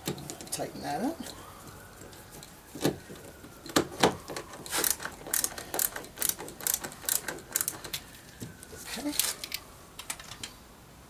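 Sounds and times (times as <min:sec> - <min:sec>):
screwdriver tightening screw: 0:04.7 - 0:08.0
ratchet-like clicking: 0:04.8 - 0:08.0.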